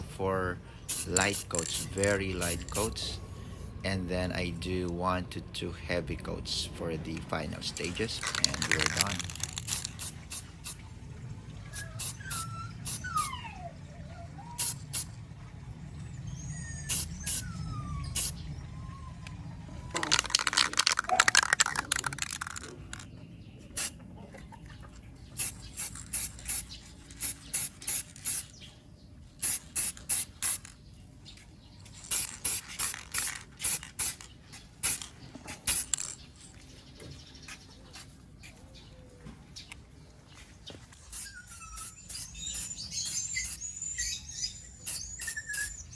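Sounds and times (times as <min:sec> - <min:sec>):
birds chirping: 0:00.0 - 0:11.0, 0:11.6 - 0:45.9
aerosol spray can hissing: 0:00.9 - 0:02.7, 0:08.4 - 0:10.8, 0:11.8 - 0:13.0, 0:14.6 - 0:15.1, 0:16.9 - 0:17.4, 0:25.4 - 0:28.5, 0:29.4 - 0:30.7, 0:32.0 - 0:36.0, 0:41.1 - 0:43.6, 0:44.9 - 0:45.7.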